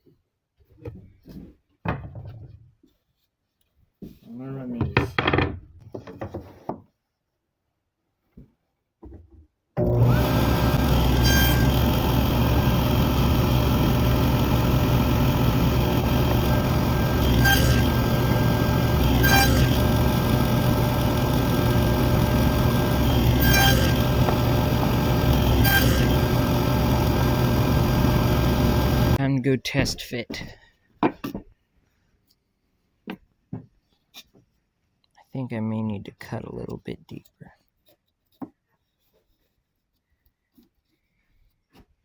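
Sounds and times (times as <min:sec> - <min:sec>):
power tool cutting wood: 0:09.8 - 0:29.2.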